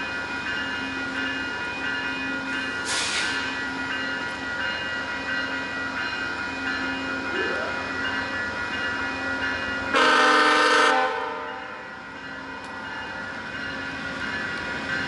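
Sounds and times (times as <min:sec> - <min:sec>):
level-crossing warning bell: 0:00.0 - 0:15.0
short hiss: 0:02.9 - 0:03.4.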